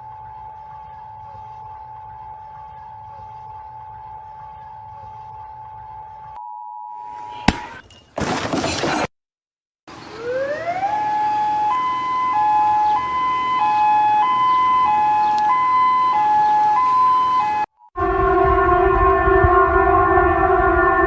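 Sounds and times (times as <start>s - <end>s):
two-tone siren: 0.0s - 7.8s, 10.0s - 21.0s.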